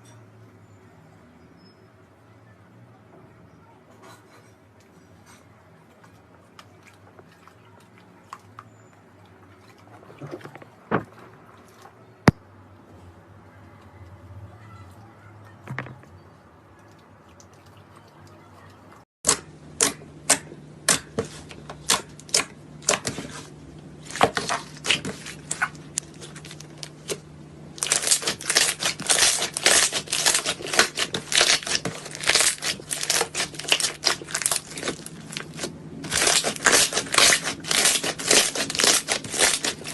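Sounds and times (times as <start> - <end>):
slime crackling and popping: 24.0 - 27.2, 27.8 - 39.9.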